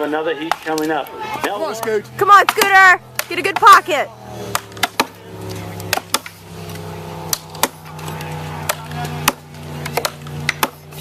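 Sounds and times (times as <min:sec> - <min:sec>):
steady low hum: 0:01.1 - 0:11.0
axes chopping into wood: 0:02.3 - 0:03.8, 0:04.4 - 0:05.2, 0:05.8 - 0:06.4, 0:07.3 - 0:11.0.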